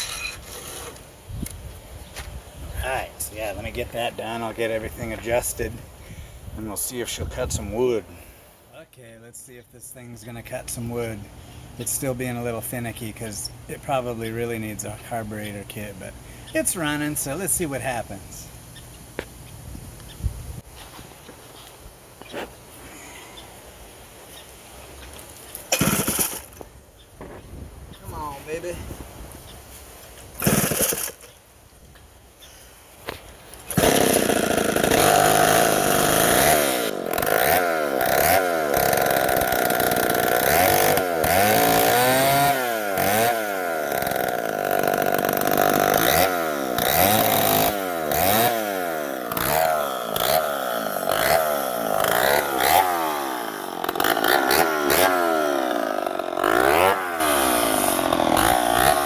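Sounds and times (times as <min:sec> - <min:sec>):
chainsaw revving: 0:00.0 - 0:01.0, 0:25.7 - 0:26.6, 0:30.4 - 0:31.4, 0:33.7 - 0:59.0.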